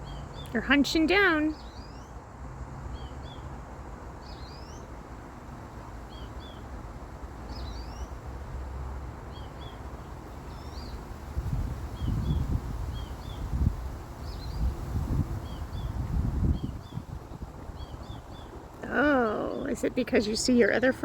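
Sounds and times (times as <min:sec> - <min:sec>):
small bird chirping: 0:00.0 - 0:02.2, 0:02.9 - 0:03.6, 0:04.2 - 0:05.0, 0:06.0 - 0:06.7, 0:07.4 - 0:08.2, 0:09.2 - 0:20.7
outdoor background hiss: 0:00.0 - 0:21.0
wind rumble on microphone: 0:09.3 - 0:21.0.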